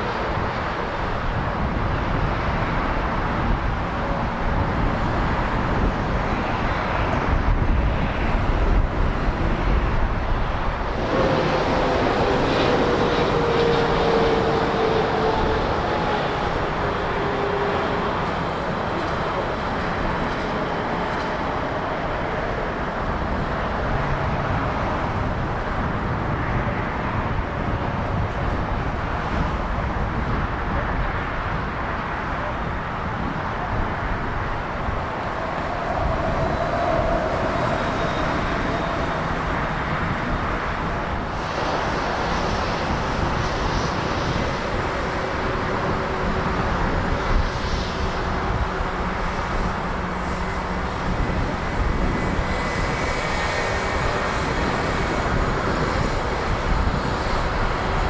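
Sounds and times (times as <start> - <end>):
jet engines running: 0.0 - 58.0.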